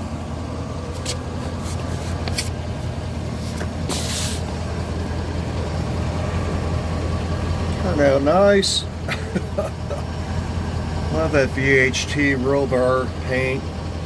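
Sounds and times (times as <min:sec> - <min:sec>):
engine idling: 0:00.0 - 0:14.0
short hiss: 0:03.4 - 0:04.5.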